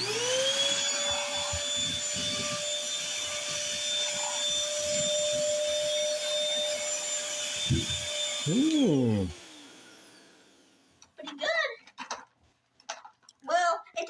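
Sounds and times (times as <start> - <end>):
vacuum cleaner motor whine: 0.0 - 10.9.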